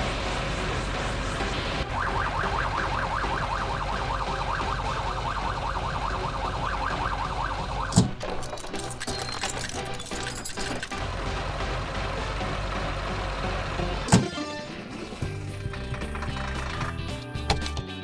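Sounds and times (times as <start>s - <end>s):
fast warbling siren: 1.8s - 8.0s.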